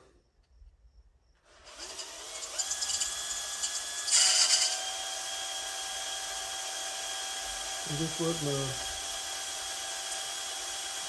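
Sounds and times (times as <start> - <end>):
electric drill whining: 1.5 - 11.0
drill bit cutting metal: 1.6 - 11.0.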